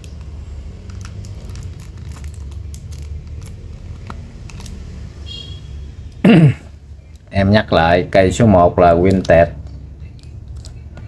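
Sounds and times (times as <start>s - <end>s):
short loud vocal sound: 6.2s - 6.7s.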